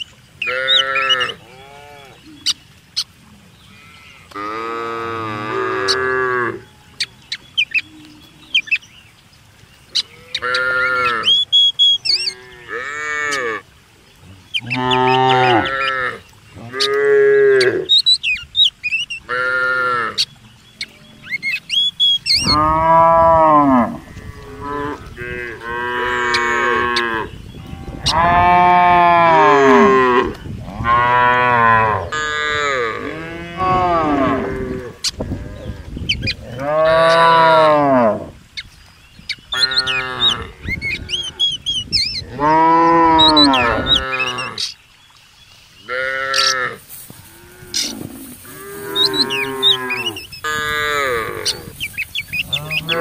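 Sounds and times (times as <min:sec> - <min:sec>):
cattle mooing: 0:14.6 - 0:17.9, 0:22.4 - 0:35.7, 0:42.3 - 0:44.6, 0:45.9 - 0:51.8, 0:52.4 - 0:53.0.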